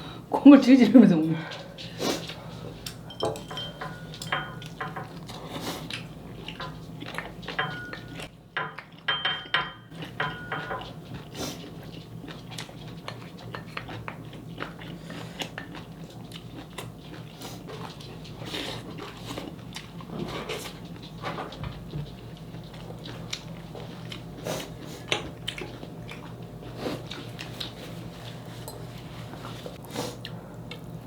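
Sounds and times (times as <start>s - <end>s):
low steady hum: 0.0s - 31.0s
cutlery clinking on dishes: 2.9s - 5.2s, 7.4s - 11.0s.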